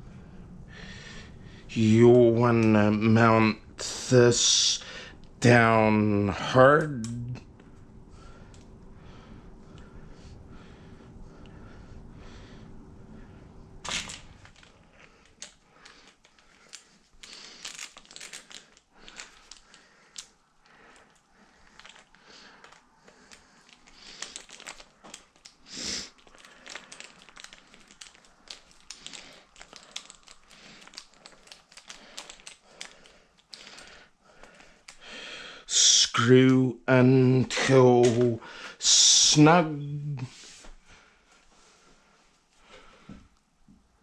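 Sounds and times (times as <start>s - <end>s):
low hum: 0.0s - 17.5s.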